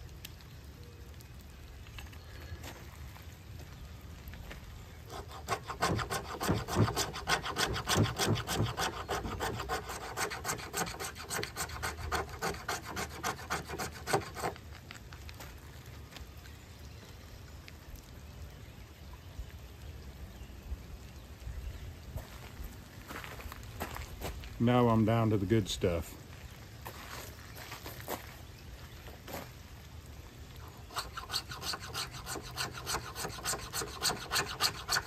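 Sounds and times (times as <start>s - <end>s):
knife scraping wood: 5.1s - 14.6s, 30.7s - 35.0s.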